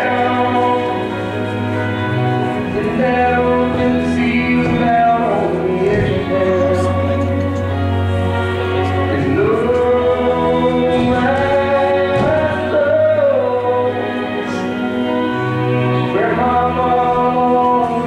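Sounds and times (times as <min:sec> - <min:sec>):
low steady accompaniment: 0:00.0 - 0:18.0
person singing long notes: 0:00.0 - 0:18.0.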